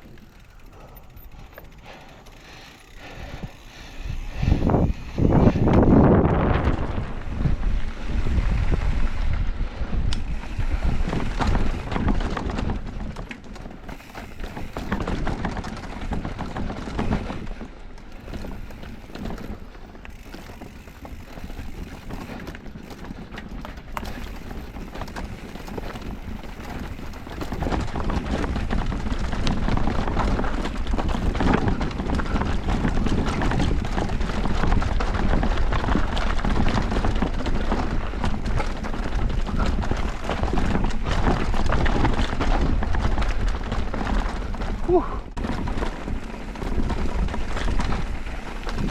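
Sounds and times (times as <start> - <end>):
bike rattling over dirt trail: 0.0 - 48.9
wind rushing over microphone: 3.0 - 13.2.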